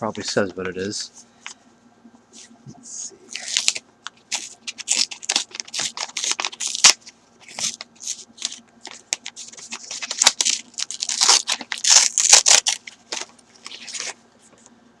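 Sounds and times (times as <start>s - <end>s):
package packaging rustling: 3.3s - 14.2s.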